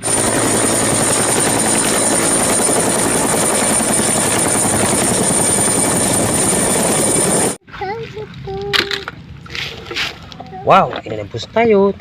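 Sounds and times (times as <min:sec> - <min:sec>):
helicopter rotor chopping: 0:00.0 - 0:07.6.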